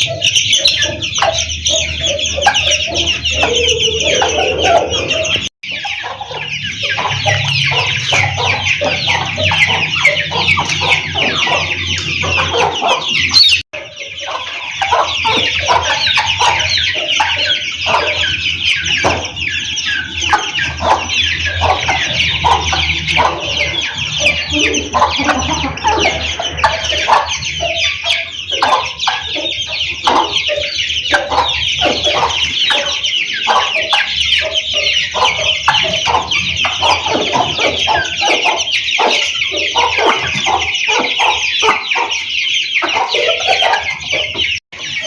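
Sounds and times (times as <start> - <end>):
chicks peeping: 0.0 - 45.0
hen clucking: 0.0 - 45.0.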